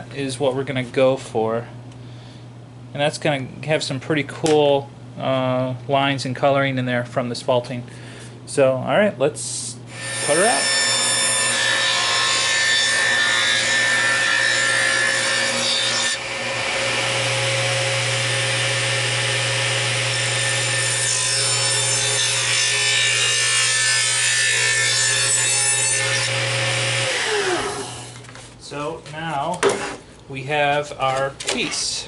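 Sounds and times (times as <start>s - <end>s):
table saw cutting wood: 9.9s - 28.2s.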